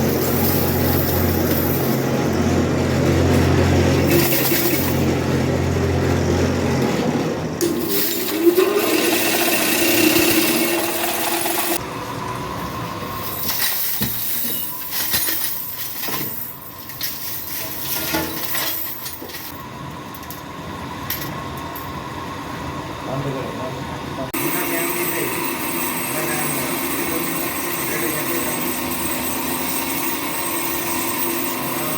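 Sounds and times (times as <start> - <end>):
motor-driven tool humming: 8.3 - 11.8.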